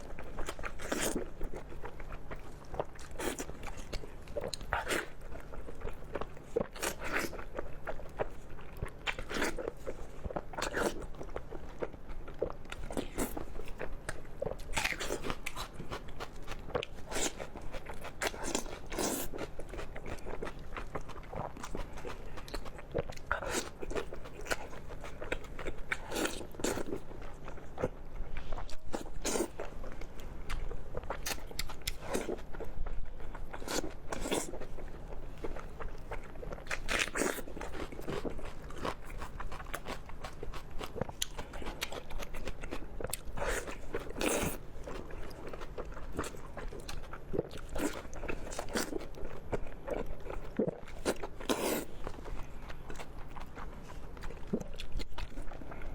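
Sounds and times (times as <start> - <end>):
person biting and chewing: 36.5 - 49.3, 49.9 - 52.1.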